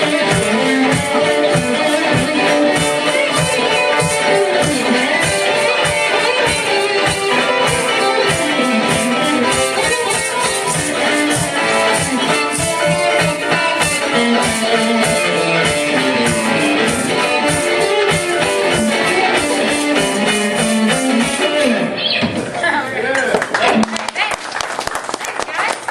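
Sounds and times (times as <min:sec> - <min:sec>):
drums keeping a beat: 0:00.0 - 0:22.7
electric guitar: 0:00.0 - 0:24.3.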